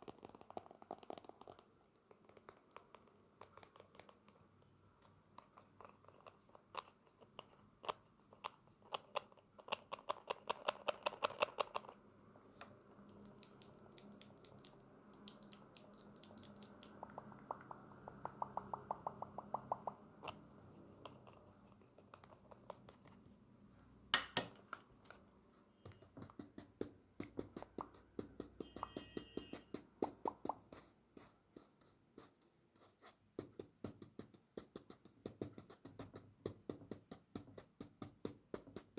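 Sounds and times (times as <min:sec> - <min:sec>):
tapping on makeup items: 0:24.2 - 0:24.6.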